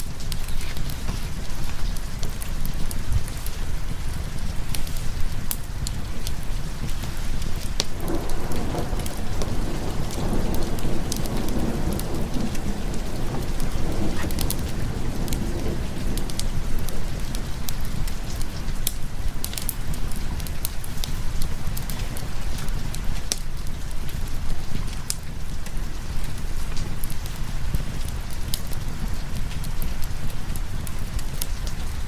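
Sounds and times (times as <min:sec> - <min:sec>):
heavy rain: 0:00.0 - 0:32.0
wood fire crackling: 0:00.0 - 0:32.0
thunder rumbling: 0:06.0 - 0:22.6.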